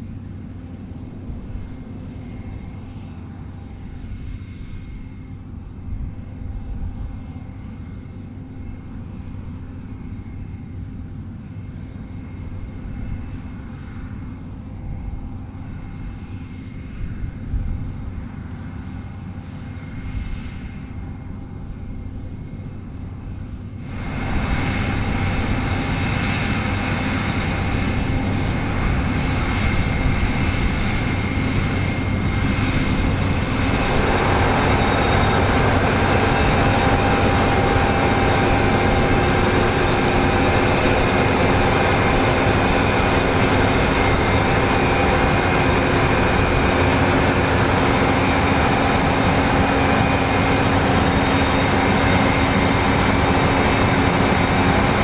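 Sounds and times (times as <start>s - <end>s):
combine harvester droning: 17.2s - 55.0s.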